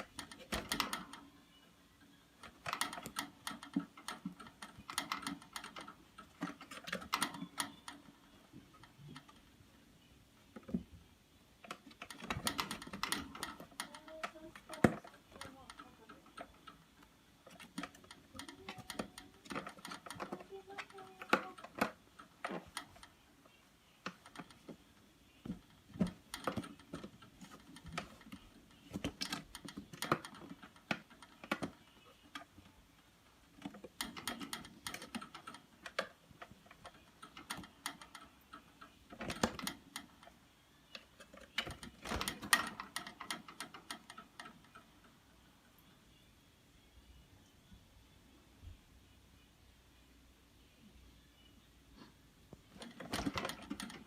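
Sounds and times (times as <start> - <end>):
light clicking and tapping: 11.6 - 45.2.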